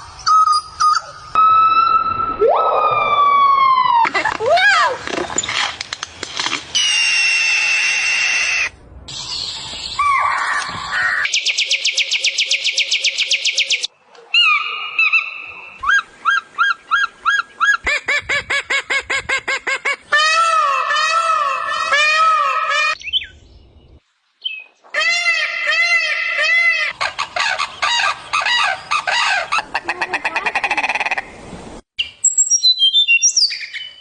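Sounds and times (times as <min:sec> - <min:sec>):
bird chirps: 0:23.0 - 0:24.8, 0:32.0 - 0:34.0.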